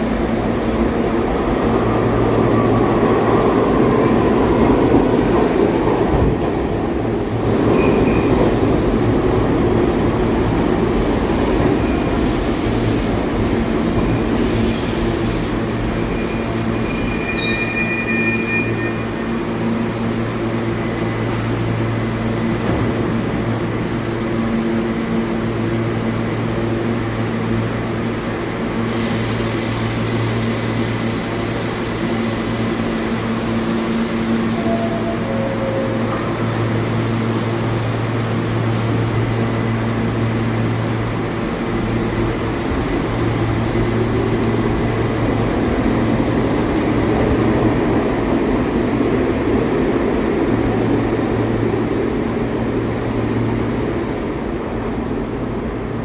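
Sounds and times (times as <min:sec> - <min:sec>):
subway train rumbling on rails: 0:00.0 - 0:56.0
high wheel squeals: 0:16.1 - 0:19.2.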